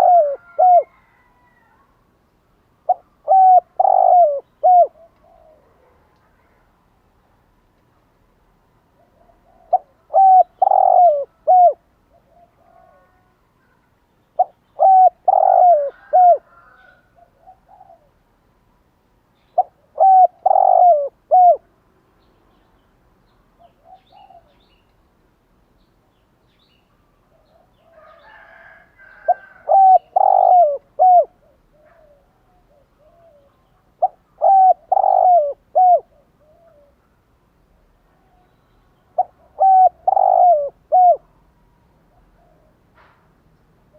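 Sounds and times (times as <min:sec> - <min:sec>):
dove cooing: 0:00.0 - 0:01.8, 0:02.8 - 0:06.6, 0:09.0 - 0:13.3, 0:14.4 - 0:18.2, 0:19.6 - 0:21.7, 0:23.6 - 0:24.6, 0:27.3 - 0:37.0, 0:39.2 - 0:41.3, 0:42.1 - 0:42.8
small birds chirping: 0:19.3 - 0:25.1.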